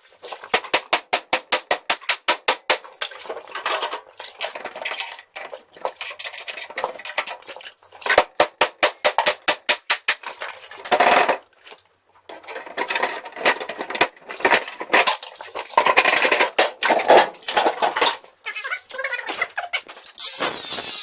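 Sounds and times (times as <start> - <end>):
metal objects clattering: 2.9 - 8.4, 10.2 - 18.3, 19.9 - 21.0.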